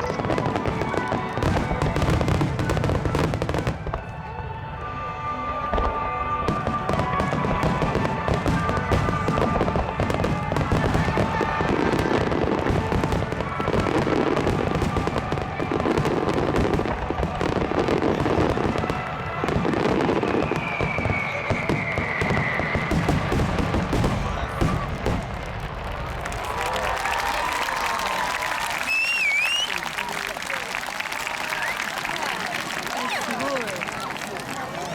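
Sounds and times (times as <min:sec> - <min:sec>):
fireworks bursting: 0:00.0 - 0:04.2, 0:05.7 - 0:27.4
background music: 0:00.1 - 0:20.9
falling whistle tone: 0:20.2 - 0:23.2, 0:28.8 - 0:29.9.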